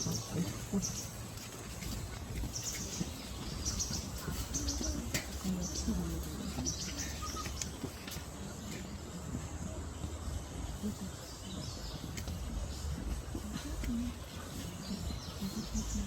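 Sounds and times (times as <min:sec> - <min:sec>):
birds chirping: 0:00.0 - 0:16.0
faint distant voices: 0:00.0 - 0:16.0.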